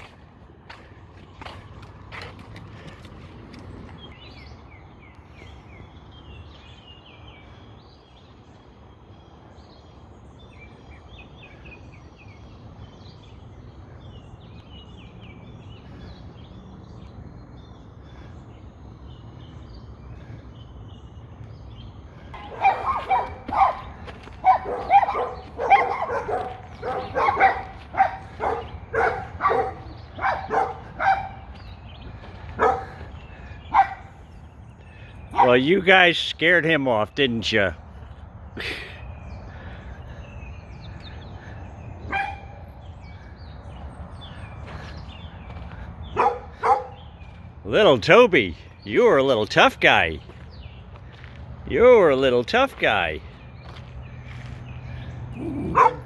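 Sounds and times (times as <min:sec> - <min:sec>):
dogs barking loudly: 0:22.3 - 0:34.4, 0:35.1 - 0:35.9, 0:41.1 - 0:43.8, 0:44.6 - 0:47.3, 0:54.8 - 0:56.0.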